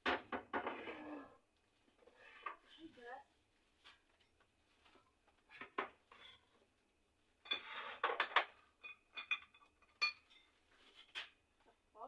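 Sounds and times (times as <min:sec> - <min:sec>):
dishes and utensils clinking: 0:07.4 - 0:10.6.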